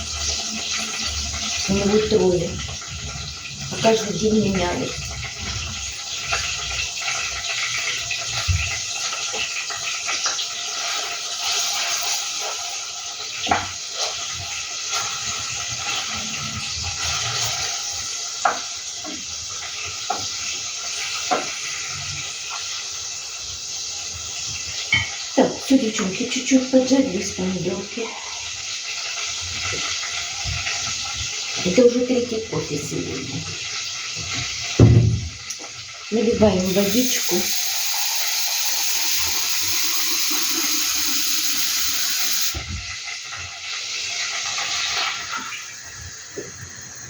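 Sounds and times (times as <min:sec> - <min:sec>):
tomatoes sizzling in a pan: 0:00.0 - 0:47.0
tap water filling vessel: 0:36.6 - 0:42.8.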